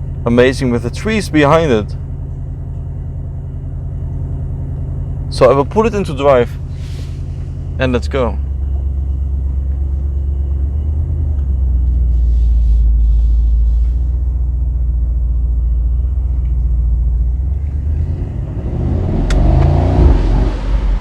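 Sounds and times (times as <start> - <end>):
car engine accelerating: 3.4 - 21.0.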